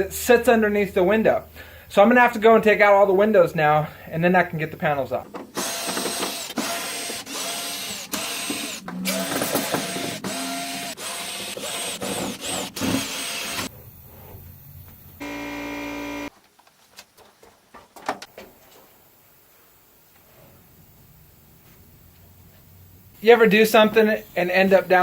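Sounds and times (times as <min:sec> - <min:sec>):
steady buzz: 0:00.0 - 0:16.3
power tool motor whining: 0:05.5 - 0:16.3.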